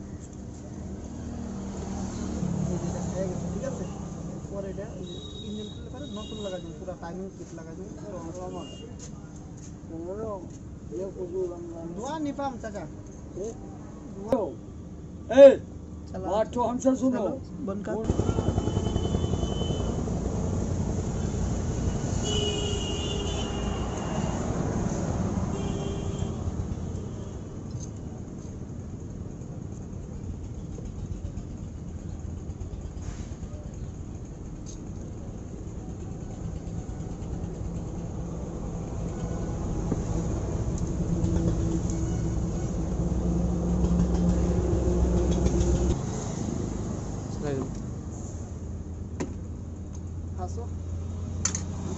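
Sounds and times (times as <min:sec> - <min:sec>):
motorcycle engine rattling: 0:18.0 - 0:20.2
vehicle engine droning: 0:30.1 - 0:47.7.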